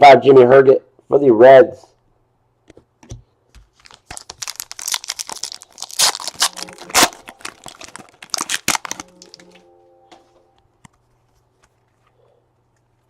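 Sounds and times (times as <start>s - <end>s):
foil wrapper tearing and crinkling: 3.8s - 9.5s.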